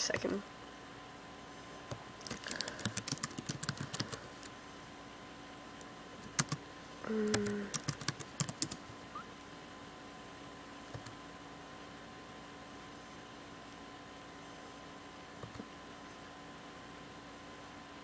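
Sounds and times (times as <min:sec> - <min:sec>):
typing on computer keyboard: 0:02.2 - 0:04.2, 0:06.3 - 0:06.6, 0:07.3 - 0:08.8.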